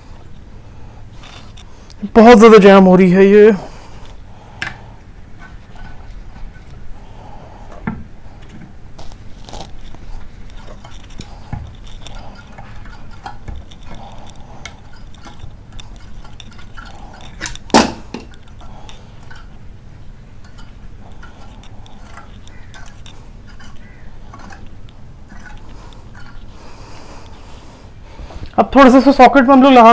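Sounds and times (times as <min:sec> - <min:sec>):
small metallic clicks: 0:08.4 - 0:19.6, 0:20.4 - 0:26.5.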